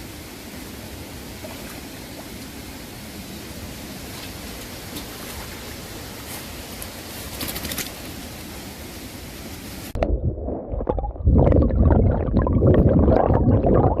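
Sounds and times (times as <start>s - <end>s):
rushing hiss of flowing water: 0.0s - 10.0s
water gurgling and sloshing: 0.4s - 7.3s, 9.9s - 14.0s.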